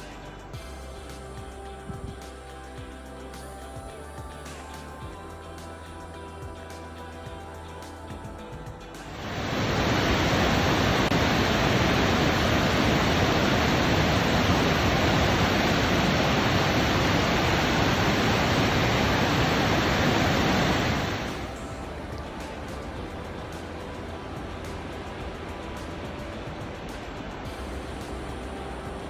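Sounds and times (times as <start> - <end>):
waterfall rushing: 9.1 - 22.0.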